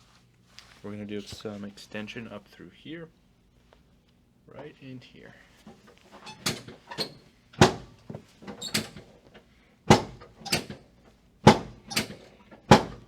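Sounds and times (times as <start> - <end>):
wooden knocks of adjusting table: 9.9 - 10.7.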